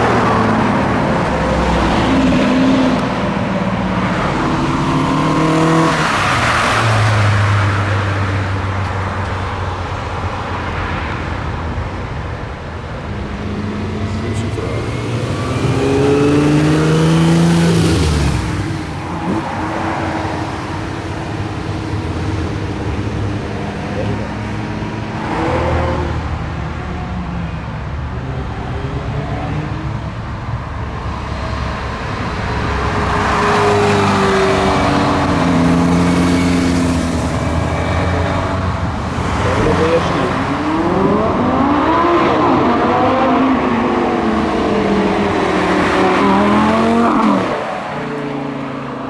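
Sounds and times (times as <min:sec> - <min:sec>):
sports car engines revving: 0:00.0 - 0:49.0
people talking: 0:13.8 - 0:15.8, 0:23.8 - 0:24.5, 0:39.1 - 0:41.2.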